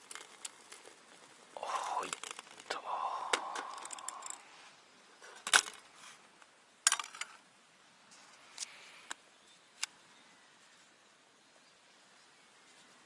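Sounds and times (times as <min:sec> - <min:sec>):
cooking gear clicking and clacking: 0:03.3 - 0:04.4.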